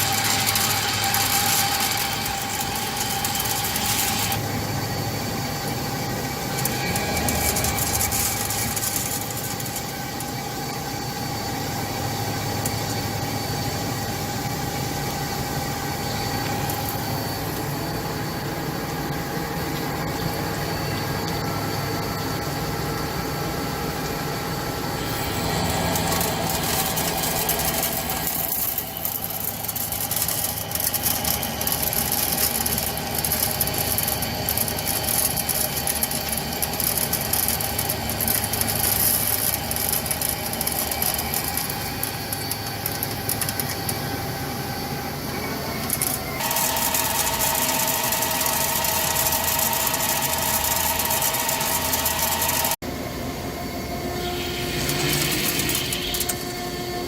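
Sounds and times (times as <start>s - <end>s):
hissing crackling cutting noise: 0.0s - 4.4s, 6.2s - 10.4s, 24.8s - 43.6s, 46.4s - 52.8s, 53.9s - 57.0s
lathe spindle whine: 0.0s - 57.0s.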